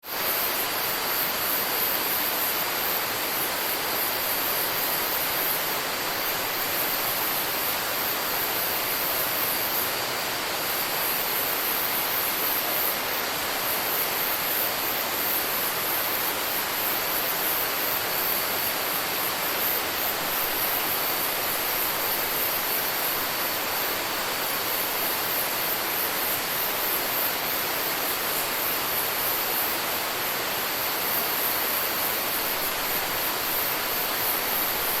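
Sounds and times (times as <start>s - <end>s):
thin steady whine: 0.1s - 35.0s
high-pitched insect chorus: 0.2s - 35.0s.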